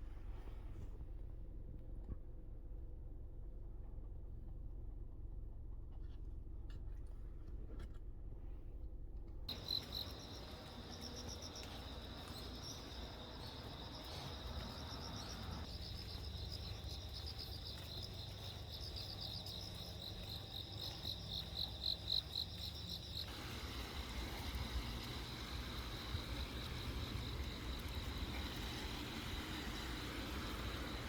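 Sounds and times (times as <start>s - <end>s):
low background rumble: 0.0s - 31.0s
insects chirping: 9.5s - 31.0s.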